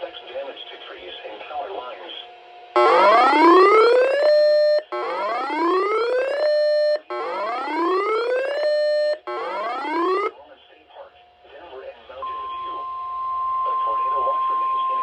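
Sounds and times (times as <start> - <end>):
rising electronic siren tone: 2.8 - 10.3.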